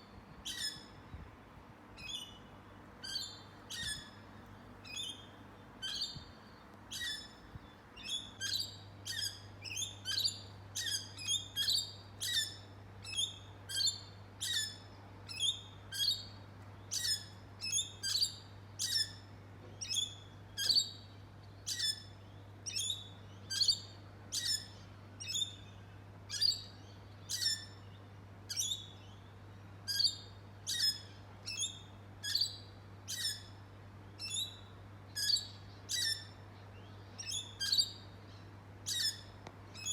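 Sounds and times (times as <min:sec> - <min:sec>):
bird chirping: 0:02.0 - 0:04.2, 0:04.8 - 0:19.2, 0:26.3 - 0:33.6, 0:34.2 - 0:39.9.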